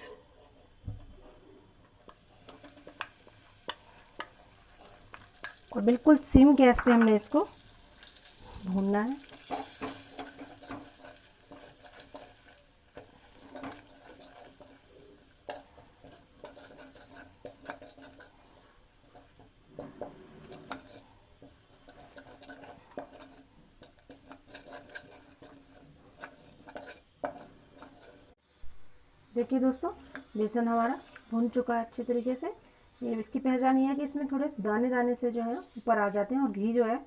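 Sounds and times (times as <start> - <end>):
utensil scraping a pan: 9.3 - 28.4, 29.7 - 31.6.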